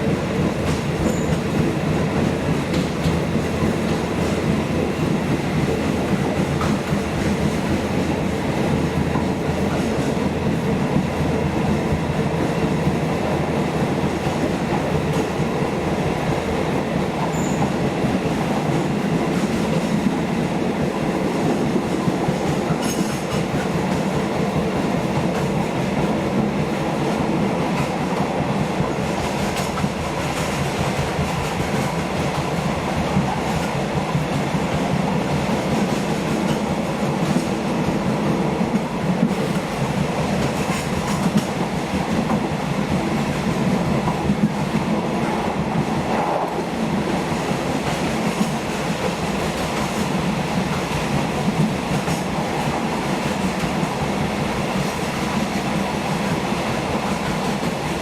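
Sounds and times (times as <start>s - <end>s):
train wheels rumbling on rails: 0.0s - 58.0s.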